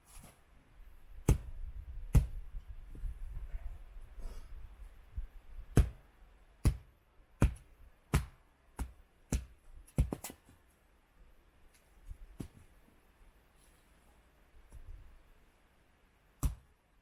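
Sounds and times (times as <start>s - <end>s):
axe chopping wood: 1.2s - 2.4s, 5.6s - 10.6s, 16.4s - 16.7s.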